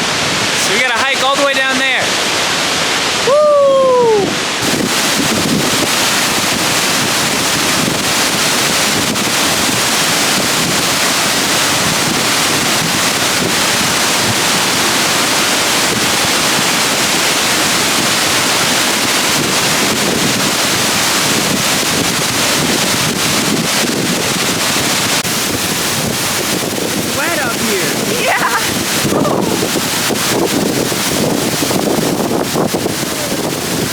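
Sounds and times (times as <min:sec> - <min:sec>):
waterfall roaring: 0:00.0 - 0:33.9.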